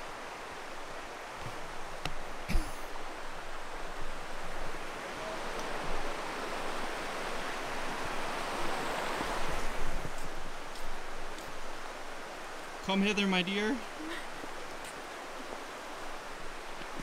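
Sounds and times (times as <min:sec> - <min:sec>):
creek water rushing: 0:00.0 - 0:17.0
brief thump: 0:01.4 - 0:02.9.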